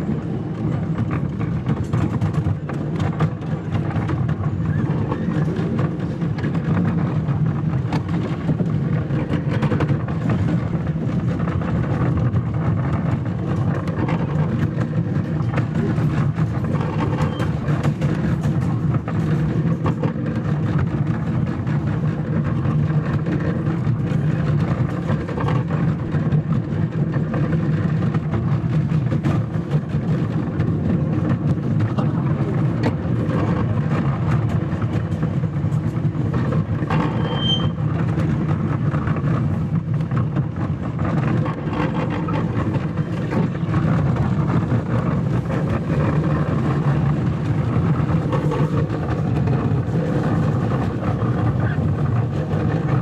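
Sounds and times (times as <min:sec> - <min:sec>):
small train engine droning: 0:00.0 - 0:53.0
high squeak: 0:37.1 - 0:37.8.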